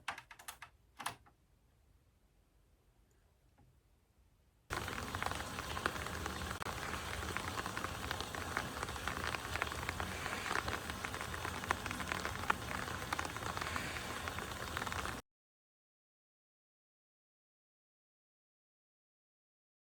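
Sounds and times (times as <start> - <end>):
steady rain patter: 4.7 - 15.2.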